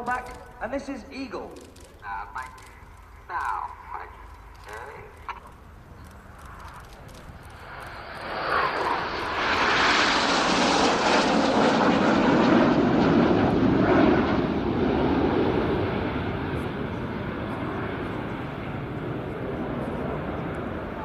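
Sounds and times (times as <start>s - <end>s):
jets roaring past: 7.0s - 21.0s.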